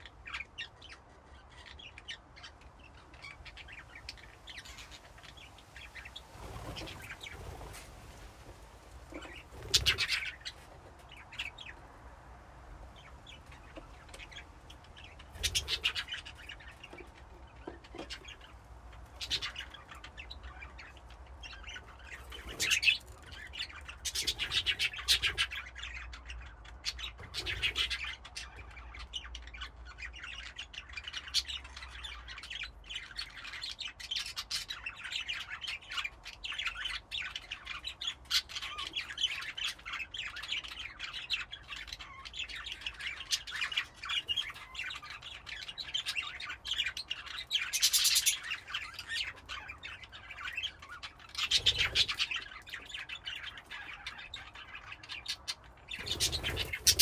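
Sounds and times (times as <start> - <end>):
budgerigars chirping: 0.0 - 7.8, 9.1 - 11.8, 13.0 - 57.0
budgerigars squawking: 9.1 - 10.6, 13.6 - 18.5, 19.1 - 57.0.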